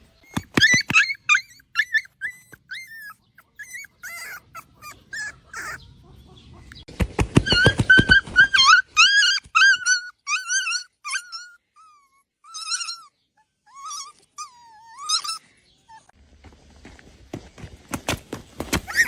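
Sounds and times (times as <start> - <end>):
puppy whimpering: 0.2 - 5.9, 7.4 - 16.2.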